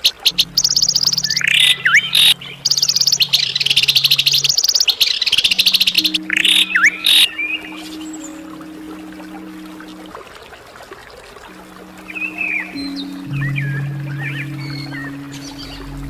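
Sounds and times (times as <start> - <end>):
songbird trilling: 0.0 - 8.5
steady low hum: 0.2 - 10.2.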